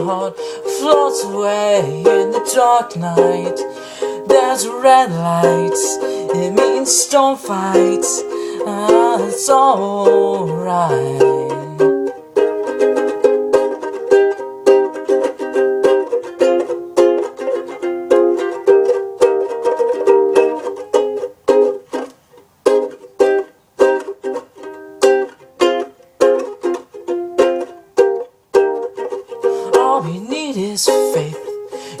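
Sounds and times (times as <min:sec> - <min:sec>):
person singing: 0:00.0 - 0:19.6, 0:28.9 - 0:32.0
ukulele strumming: 0:00.0 - 0:32.0.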